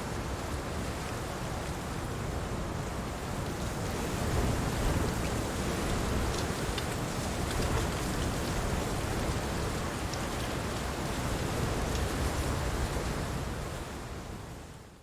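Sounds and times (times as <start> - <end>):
ticks of raindrops: 5.1 - 12.1.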